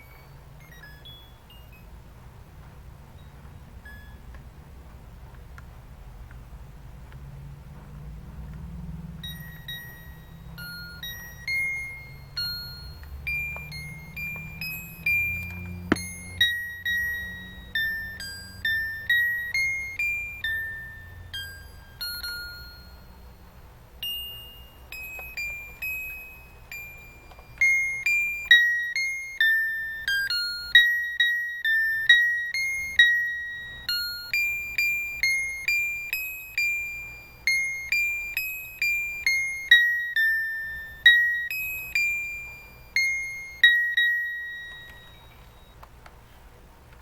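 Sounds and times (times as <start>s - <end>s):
electronic chime carol notes: 9.2s - 45.8s.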